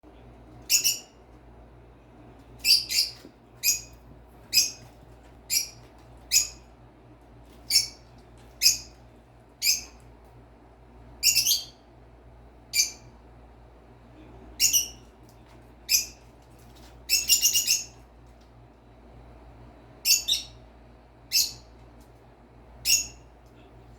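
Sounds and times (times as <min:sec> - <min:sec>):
faint low hum: 0:00.0 - 0:23.9
birds chirping: 0:00.7 - 0:01.2, 0:02.6 - 0:04.8, 0:05.5 - 0:06.6, 0:07.7 - 0:08.0, 0:08.6 - 0:09.0, 0:09.6 - 0:10.0, 0:11.2 - 0:11.8, 0:12.7 - 0:13.1, 0:14.6 - 0:15.0, 0:17.1 - 0:18.0, 0:20.0 - 0:20.6, 0:21.3 - 0:21.7.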